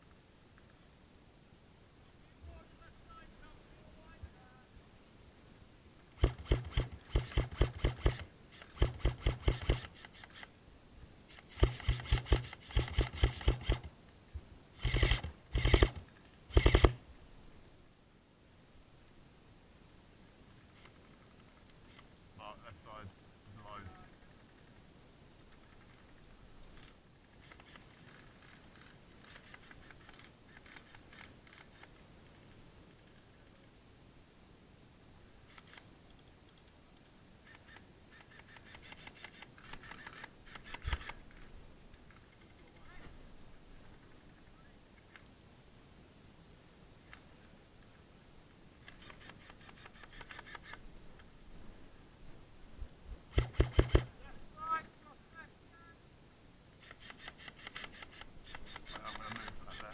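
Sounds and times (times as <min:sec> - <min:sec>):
faint light clicks: 0:00.0 - 0:00.8
airsoft gun firing: 0:06.2 - 0:10.2, 0:11.4 - 0:13.9, 0:14.8 - 0:17.0, 0:53.3 - 0:54.2
rustling: 0:20.2 - 0:33.8, 0:35.3 - 0:45.4, 0:47.0 - 0:56.0, 0:56.7 - 0:59.9.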